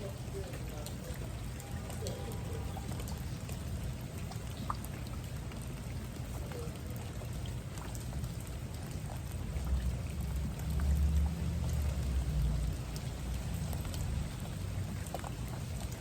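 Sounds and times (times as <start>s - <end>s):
steady rain falling: 0.0s - 16.0s.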